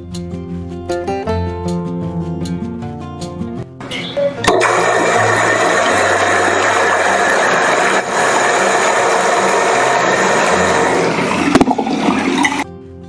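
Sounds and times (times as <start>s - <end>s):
water faucet running: 4.0s - 12.7s
loud humming faucet vibration: 4.4s - 12.6s.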